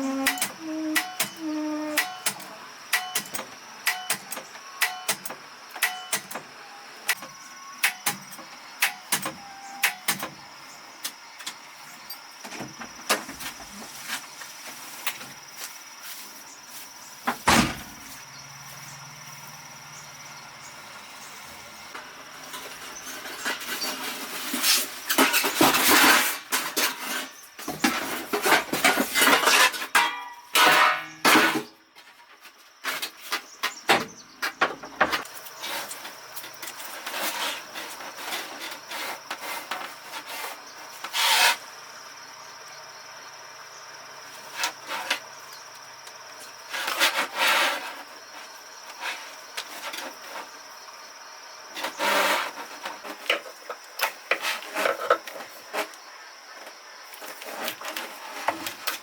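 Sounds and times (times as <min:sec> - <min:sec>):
scraping and rubbing: 0:22.4 - 0:29.9, 0:35.5 - 0:41.6.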